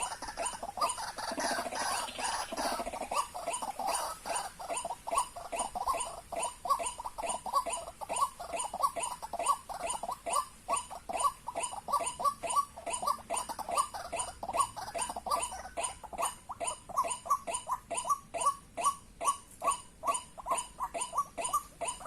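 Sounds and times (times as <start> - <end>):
bird calling repeated notes: 0.0 - 22.0.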